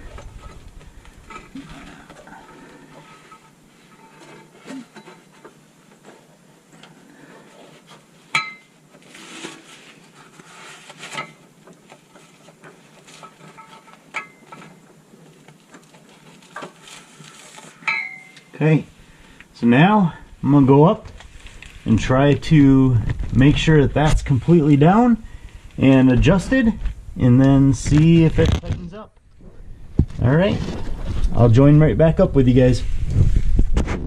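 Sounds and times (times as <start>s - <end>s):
sharp ringing metal clink: 17.9s - 18.5s.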